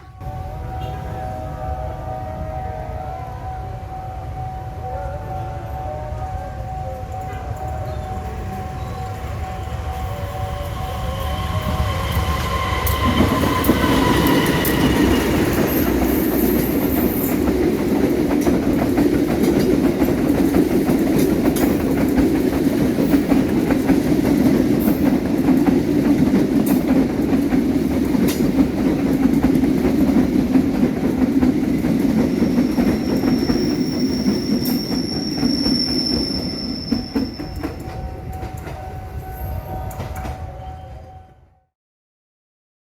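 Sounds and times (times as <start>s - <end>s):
train horn blast: 0.0s - 16.3s
train wheel rumble and clickety-clack: 0.0s - 41.5s
high wheel squeal: 8.8s - 17.3s, 32.9s - 37.8s.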